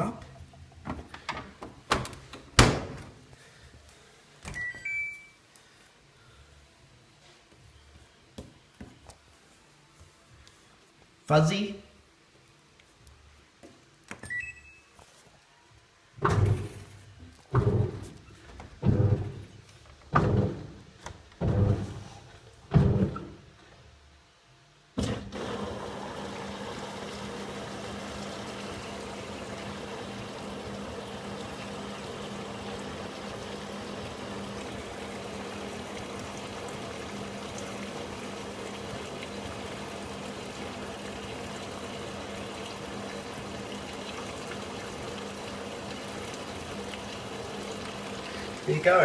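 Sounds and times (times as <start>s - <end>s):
water rushing into washing machine: 25.0s - 49.0s.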